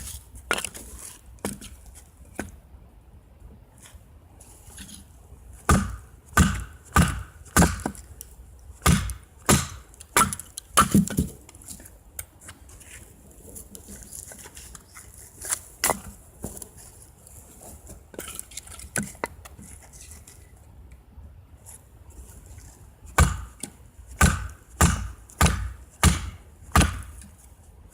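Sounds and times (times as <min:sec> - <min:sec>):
firewood chopping strikes: 0:05.7 - 0:08.1, 0:08.8 - 0:11.4, 0:23.1 - 0:27.2.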